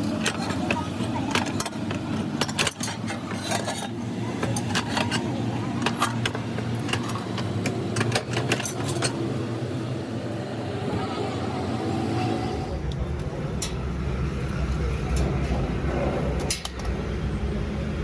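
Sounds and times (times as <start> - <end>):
metal clicks and clanks: 0.0 - 9.2, 16.4 - 17.0
factory machinery humming: 0.0 - 18.0.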